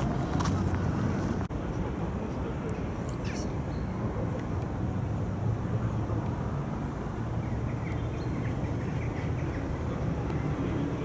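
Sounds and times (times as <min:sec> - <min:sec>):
low outdoor rumble: 0:00.0 - 0:02.0.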